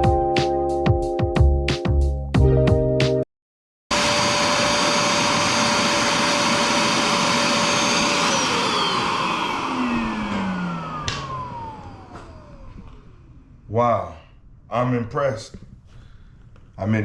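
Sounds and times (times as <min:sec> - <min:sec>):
background music: 0:00.0 - 0:03.2
carpet cleaner suction motor: 0:03.9 - 0:13.5.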